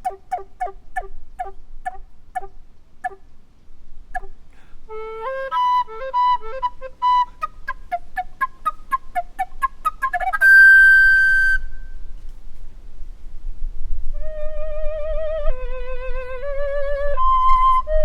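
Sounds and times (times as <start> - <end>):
recorder playing: 4.2 - 12.0.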